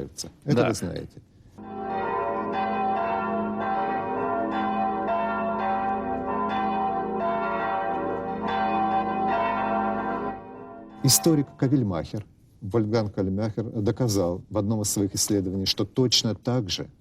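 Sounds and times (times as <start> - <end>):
church bells pealing: 1.6 - 12.0.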